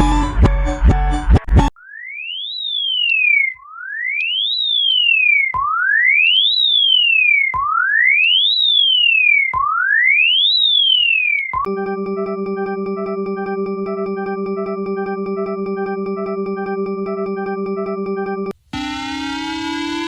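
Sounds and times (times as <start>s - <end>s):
music: 0.0s - 1.7s
electronic siren alarm tone: 1.8s - 20.0s.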